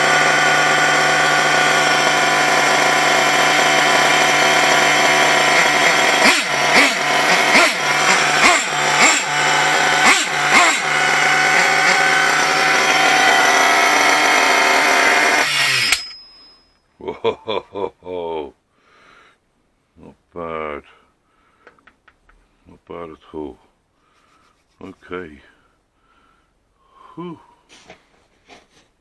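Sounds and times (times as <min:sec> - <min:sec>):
small nitro engine revving: 0:00.0 - 0:16.0.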